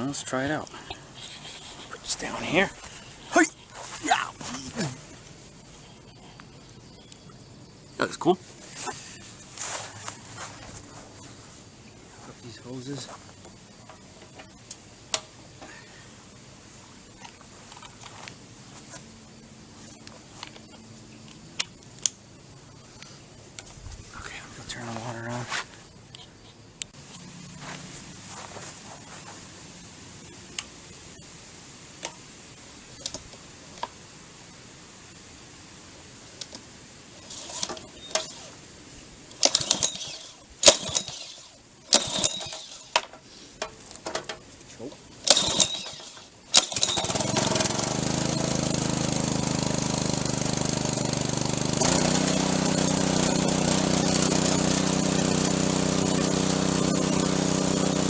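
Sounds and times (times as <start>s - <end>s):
recoil starter yanks: 0.1s - 5.2s, 37.2s - 38.6s, 39.3s - 58.0s
small gasoline engine running: 37.2s - 38.6s, 39.3s - 43.2s, 45.2s - 58.0s.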